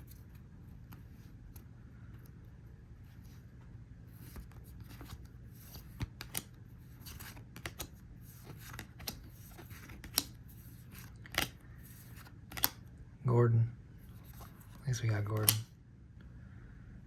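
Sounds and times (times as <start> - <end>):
faint low hum: 0.0 - 17.0
trading cards rustling: 4.1 - 12.8, 14.0 - 15.7
card snaps: 8.6 - 10.4, 11.0 - 11.6, 12.2 - 12.8, 15.3 - 15.7.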